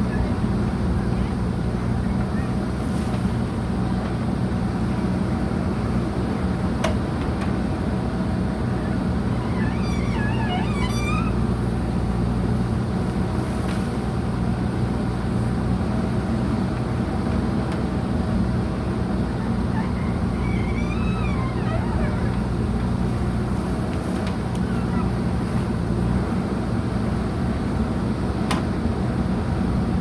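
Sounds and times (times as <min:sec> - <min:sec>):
diesel engine running: 0:00.0 - 0:09.5, 0:11.3 - 0:20.4.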